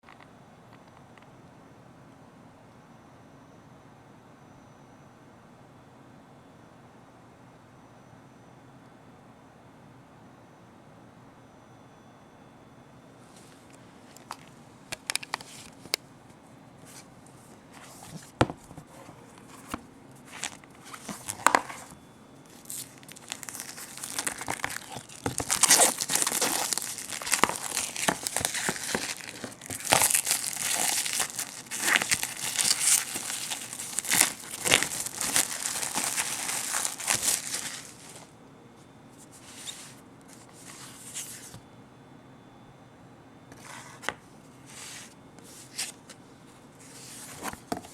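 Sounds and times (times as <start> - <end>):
packaging clicks and rustles: 14.2 - 16.0, 18.0 - 38.3
packaging crinkling and tearing: 20.2 - 38.3.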